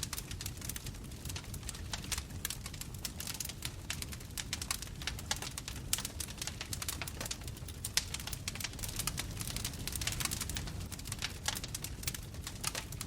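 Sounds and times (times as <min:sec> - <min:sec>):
bonfire crackling and popping: 0:00.0 - 0:13.0.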